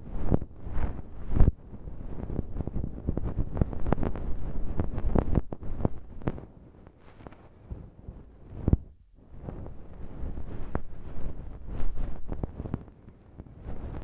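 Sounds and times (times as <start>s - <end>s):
cotton puff rubbing microphone: 9.4s - 12.8s.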